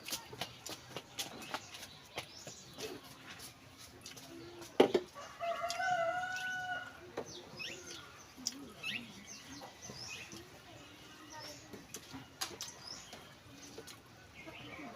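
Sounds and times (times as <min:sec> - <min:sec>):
rooster crowing: 0:05.2 - 0:07.0.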